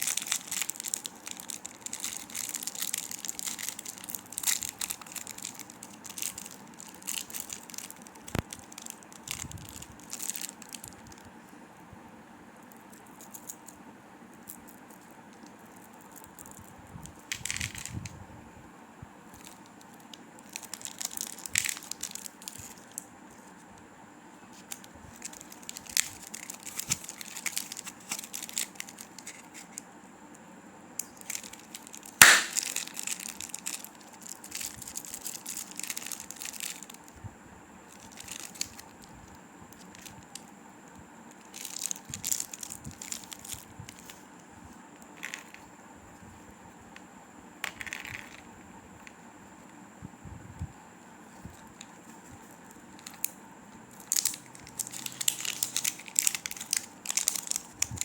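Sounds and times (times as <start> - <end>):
candy wrappers crinkling: 0.0 - 11.3, 14.4 - 18.1, 19.3 - 23.7, 24.5 - 29.8, 31.0 - 37.2, 37.9 - 40.5, 41.3 - 45.7, 47.6 - 49.2, 51.5 - 58.0
loud sharp crack: 32.2 - 32.8.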